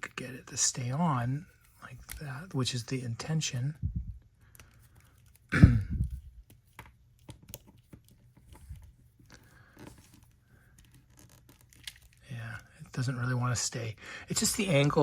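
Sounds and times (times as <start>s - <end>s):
small plastic clicks and rustles: 6.4s - 12.2s.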